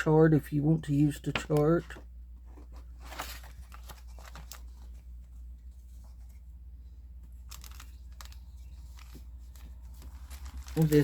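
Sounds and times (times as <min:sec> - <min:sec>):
paper and packaging crinkling: 0:02.6 - 0:06.4, 0:07.3 - 0:11.0.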